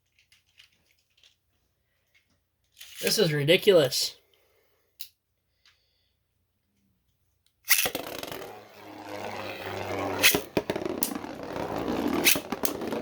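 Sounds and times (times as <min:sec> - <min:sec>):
spinning tops clacking together: 0:07.7 - 0:13.0
spinning tops scraping: 0:07.7 - 0:13.0.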